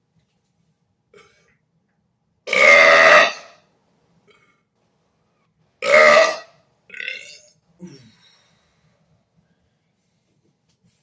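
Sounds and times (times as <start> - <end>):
man burping loudly: 2.5 - 3.5, 5.8 - 8.1.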